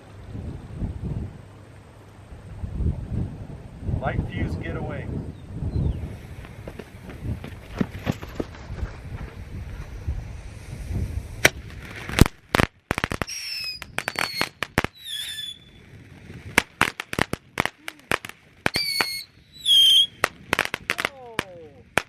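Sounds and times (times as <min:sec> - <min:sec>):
wind noise on microphone: 0:00.0 - 0:22.0
firework cracks and pops: 0:06.1 - 0:22.0
firework whistles: 0:09.8 - 0:21.1.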